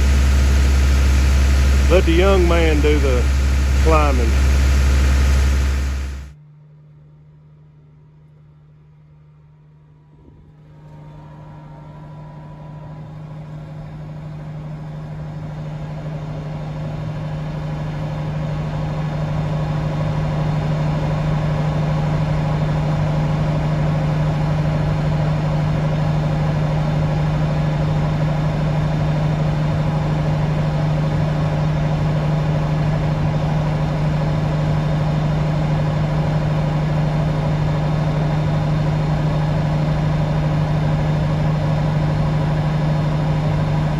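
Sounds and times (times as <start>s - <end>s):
farm machine engine running: 0.0s - 6.3s.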